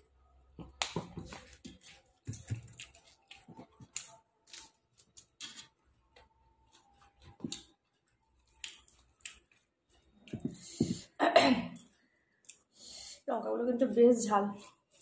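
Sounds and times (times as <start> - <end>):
chewing clicks and smacks: 0.7 - 5.7, 6.7 - 10.4.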